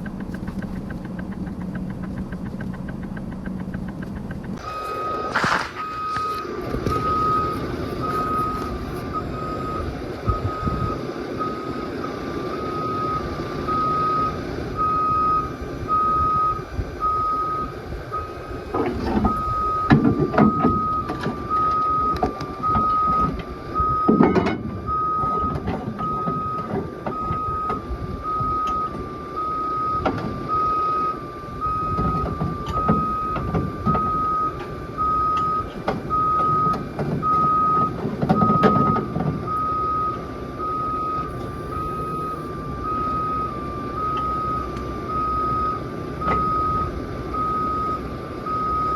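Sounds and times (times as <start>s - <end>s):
engine running: 0.0s - 48.9s
backup alarm beeping: 1.6s - 48.9s
heavy clunks: 18.7s - 27.8s, 31.8s - 39.6s.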